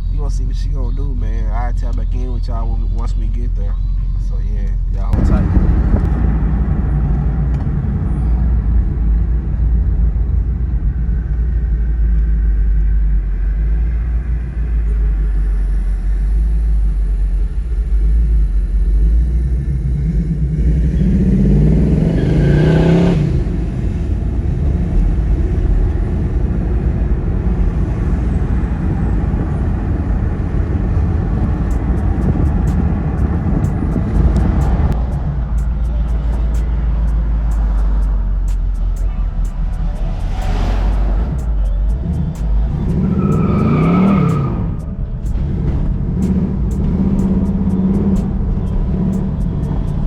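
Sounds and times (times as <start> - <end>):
car engine and road rumble: 0.0 - 50.0
engine revving: 12.6 - 50.0.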